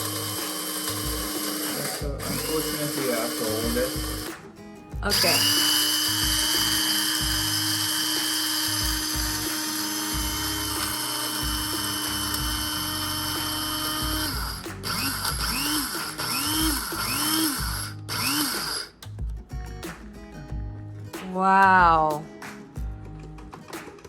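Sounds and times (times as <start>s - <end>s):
coffee grinder chopping beans: 0.0s - 4.4s, 5.1s - 18.9s.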